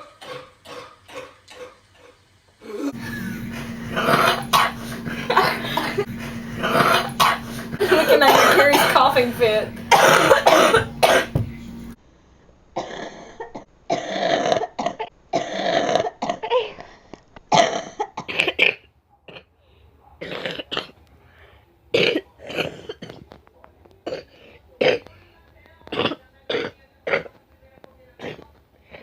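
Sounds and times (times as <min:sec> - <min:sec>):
person coughing harshly: 0:02.9 - 0:11.4.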